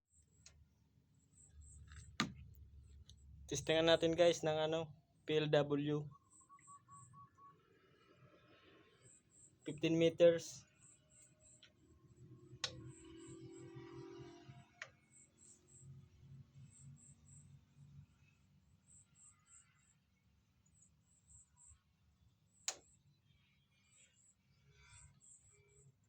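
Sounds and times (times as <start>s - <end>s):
faint click: 22.6s - 22.8s.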